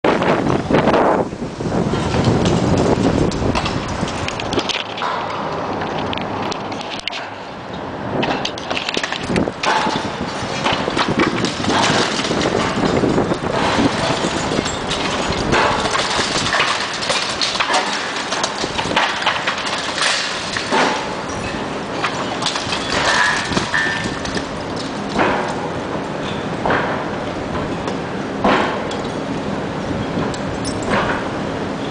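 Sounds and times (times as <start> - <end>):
bricks clattering down: 8.2 - 25.6.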